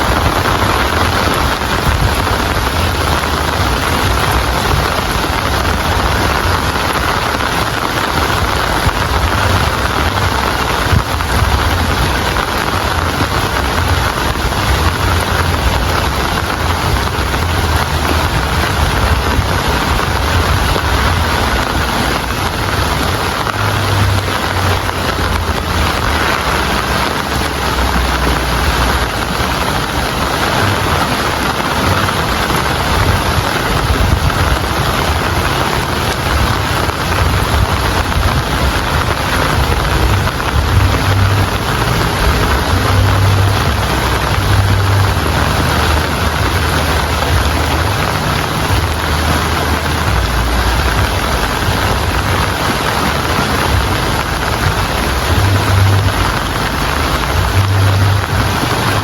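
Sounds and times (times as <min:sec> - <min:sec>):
heavy rain: 0:00.0 - 0:59.0
low rumble: 0:00.0 - 0:59.0.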